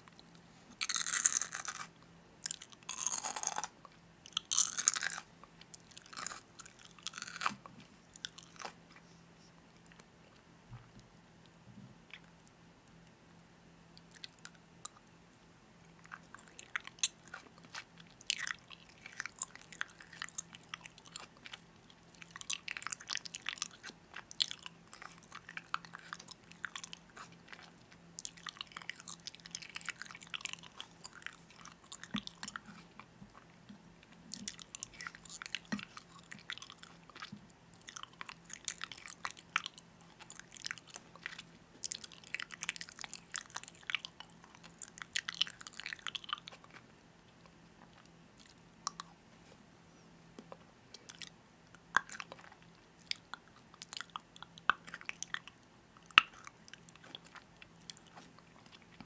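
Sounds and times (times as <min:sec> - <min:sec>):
faint steady hum: 0:00.0 - 0:59.0
crunchy chewing and biting: 0:00.8 - 0:08.8, 0:16.0 - 0:33.5, 0:34.3 - 0:46.9, 0:52.0 - 0:59.0.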